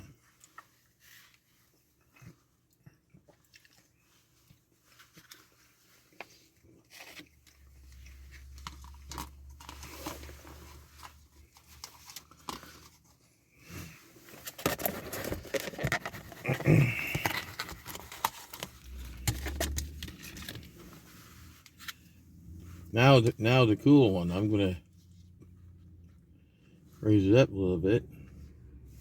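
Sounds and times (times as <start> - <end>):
person chewing food: 0.0 - 14.3, 15.4 - 20.6.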